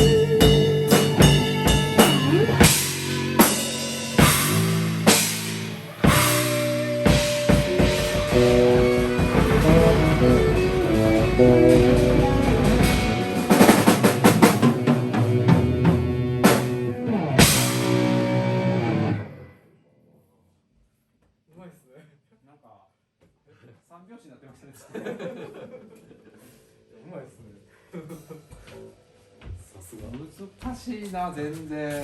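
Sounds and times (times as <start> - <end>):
drum kit with loud crashes: 0.0 - 18.5
sustained guitar notes: 0.0 - 19.6.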